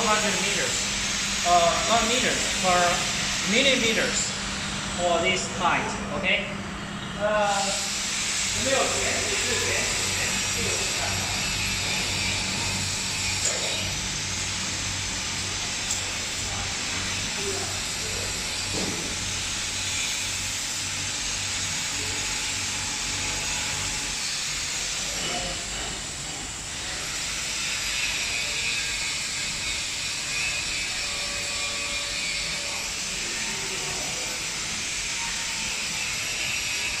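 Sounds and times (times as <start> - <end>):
cable coiling machinery hissing: 0.0 - 6.1, 7.2 - 37.0.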